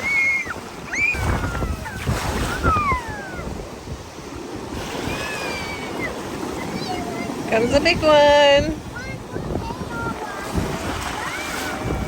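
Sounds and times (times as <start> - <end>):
ocean surf washing in: 0.0 - 12.0
wind buffeting microphone: 0.0 - 12.0
high-pitched cries: 5.0 - 6.2.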